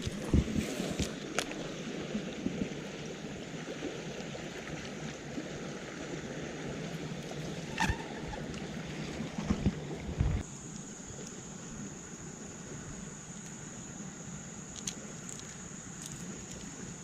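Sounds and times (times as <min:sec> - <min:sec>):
wind on microphone: 0:00.0 - 0:01.2, 0:09.4 - 0:10.4.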